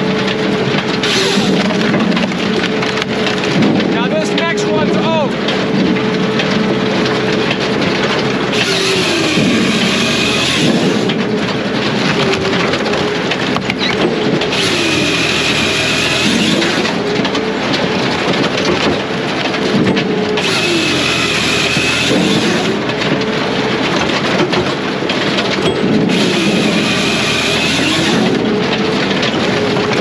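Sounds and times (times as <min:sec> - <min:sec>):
diesel engine running under load: 0:00.0 - 0:30.0
saw chain whining: 0:01.0 - 0:03.0, 0:08.5 - 0:11.2, 0:12.0 - 0:17.8, 0:20.4 - 0:22.9, 0:25.2 - 0:30.0.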